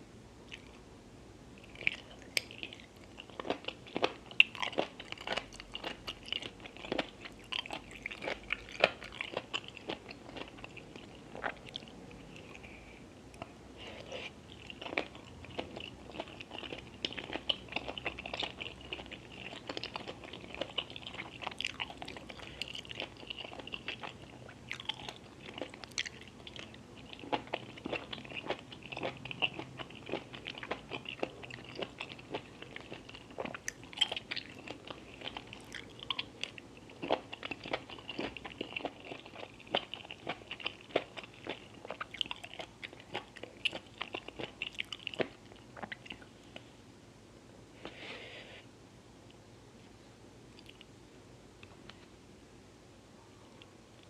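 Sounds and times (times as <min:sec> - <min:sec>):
person chewing and biting: 0:14.5 - 0:46.2.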